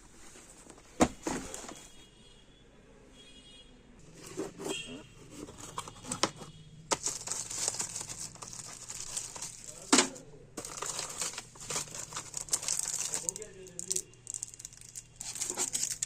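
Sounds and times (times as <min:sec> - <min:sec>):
packaging crinkling: 0:04.3 - 0:16.0.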